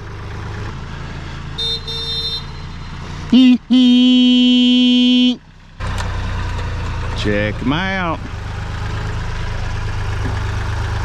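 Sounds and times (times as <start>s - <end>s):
small engine idling: 0.0s - 11.0s
horn blowing: 1.6s - 5.4s.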